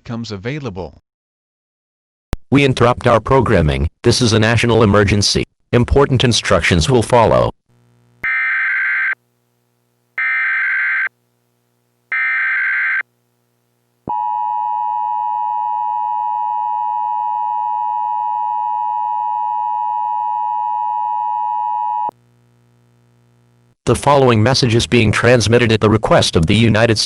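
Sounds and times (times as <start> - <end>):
warbling data header bursts: 10.2 - 11.1, 12.1 - 13.0.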